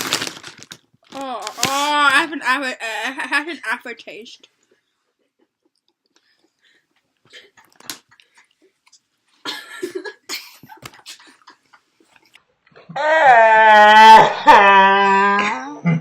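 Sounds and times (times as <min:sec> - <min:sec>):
coughing: 0:09.4 - 0:11.6
loud long cry: 0:13.0 - 0:15.9.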